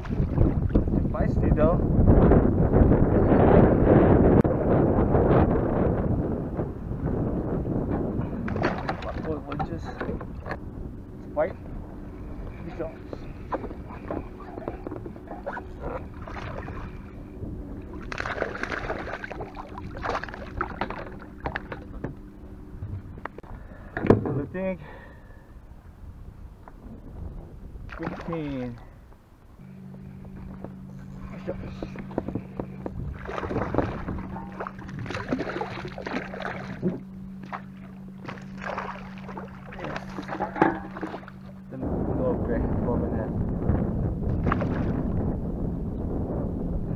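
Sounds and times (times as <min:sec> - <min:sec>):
steady low hum: 0:00.0 - 0:46.9
water splashing: 0:08.4 - 0:10.5, 0:12.5 - 0:17.2, 0:17.8 - 0:22.2, 0:27.9 - 0:28.8, 0:31.1 - 0:41.6, 0:44.3 - 0:45.1.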